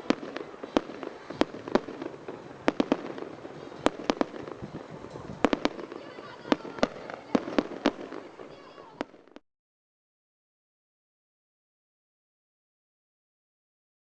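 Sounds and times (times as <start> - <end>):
firework bangs: 0.0 - 9.4
firework crackle: 0.0 - 9.4.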